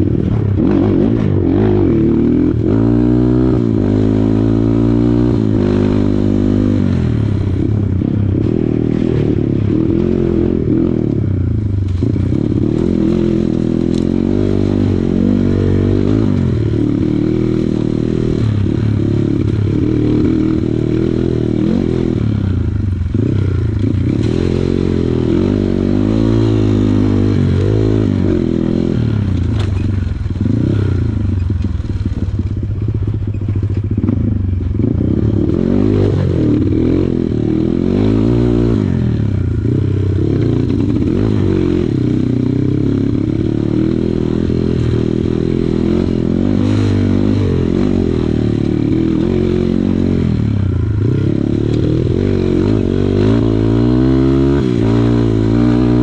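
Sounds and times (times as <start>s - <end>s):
dirt bike engine revving: 0.0s - 56.0s.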